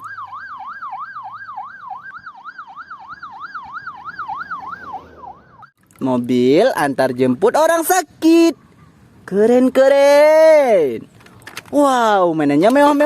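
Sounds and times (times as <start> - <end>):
ambulance siren yelping: 0.0 - 5.8.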